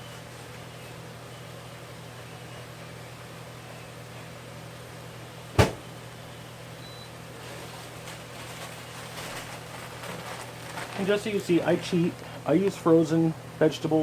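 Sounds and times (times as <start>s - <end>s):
steady low hum: 0.0s - 14.0s
sharp knock: 5.6s - 5.8s.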